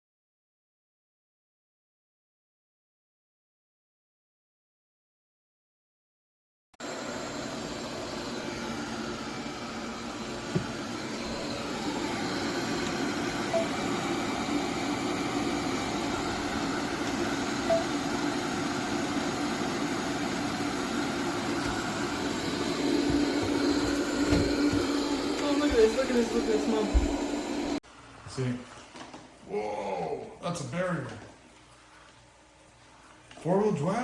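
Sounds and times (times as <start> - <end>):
robot vacuum whirring: 6.8 - 27.8.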